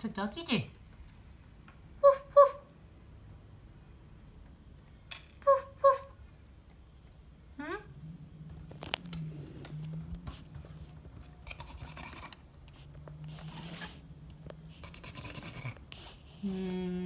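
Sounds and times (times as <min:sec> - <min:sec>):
faint low hum: 0:00.0 - 0:17.0
scratchy rustling: 0:08.6 - 0:16.8.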